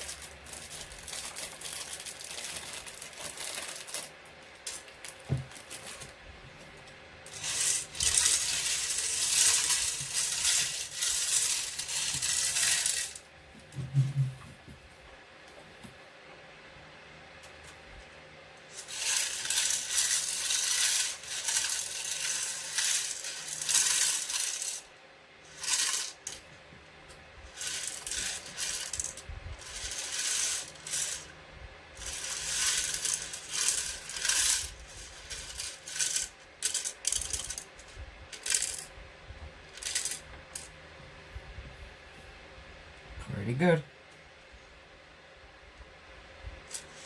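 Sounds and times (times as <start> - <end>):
plastic pieces clattering: 0.0 - 6.1, 7.3 - 13.2, 18.7 - 24.9, 25.5 - 26.4, 27.5 - 31.3, 32.0 - 38.9, 39.8 - 40.7.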